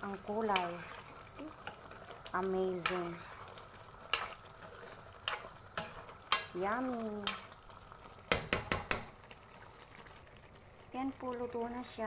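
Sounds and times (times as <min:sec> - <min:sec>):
spoon stirring in pot: 0:00.0 - 0:10.1
spoon knocking against pot: 0:08.3 - 0:09.2.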